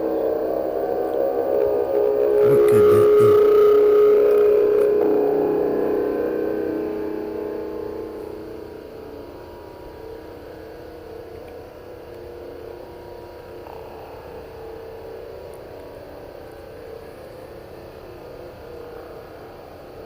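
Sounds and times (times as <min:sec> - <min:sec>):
droning hum from the sky: 0:00.0 - 0:20.0.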